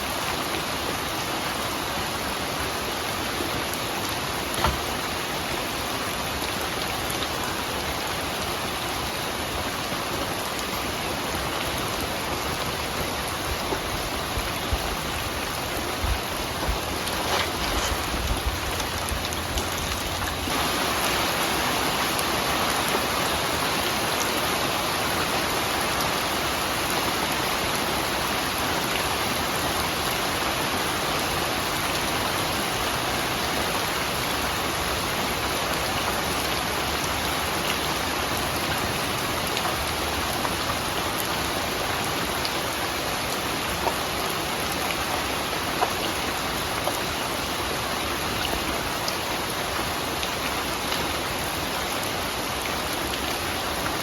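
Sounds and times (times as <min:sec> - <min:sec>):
steady rain falling: 0:00.0 - 0:54.0
rain drop taps: 0:04.5 - 0:04.9.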